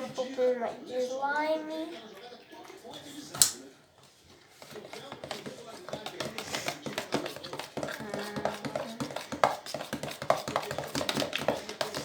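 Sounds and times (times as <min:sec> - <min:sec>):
utensil tapping a container: 0:04.6 - 0:12.0.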